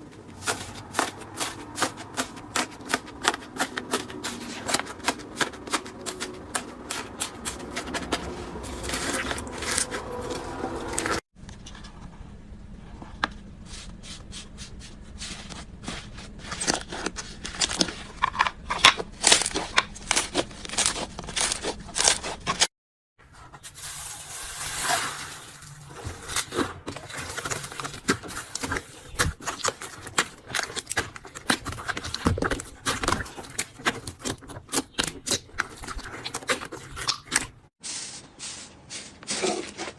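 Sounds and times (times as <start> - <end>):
scraping: 0.1 - 12.1.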